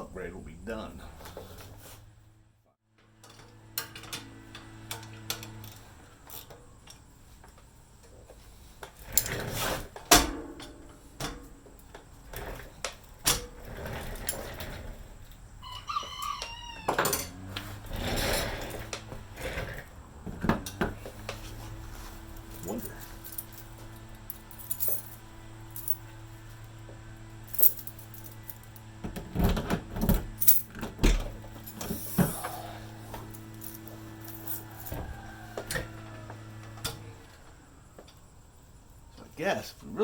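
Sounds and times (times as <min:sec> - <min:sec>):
rooster crowing: 0:15.6 - 0:17.9, 0:32.2 - 0:38.4
hand tools clanking on metal: 0:20.4 - 0:25.2, 0:30.0 - 0:36.0.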